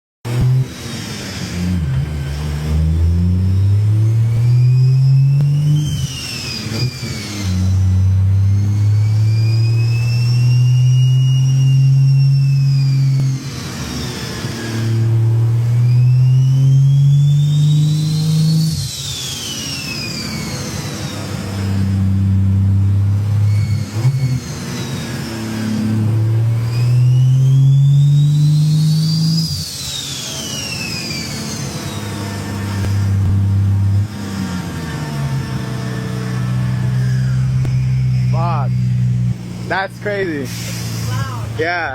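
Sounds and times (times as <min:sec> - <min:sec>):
turbo whistle: 0:00.3 - 0:41.6
car engine accelerating hard: 0:00.3 - 0:41.9
turbo fluttering: 0:00.3 - 0:41.9.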